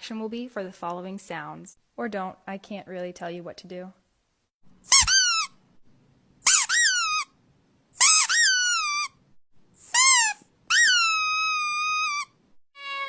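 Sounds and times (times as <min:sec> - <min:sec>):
high-pitched squeaks: 0:04.9 - 0:05.5, 0:06.5 - 0:07.3, 0:08.0 - 0:09.2, 0:09.8 - 0:12.4.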